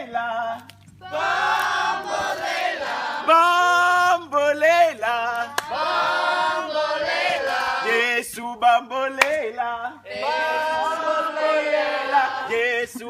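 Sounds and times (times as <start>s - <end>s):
group singing unaccompanied: 0.0s - 13.0s.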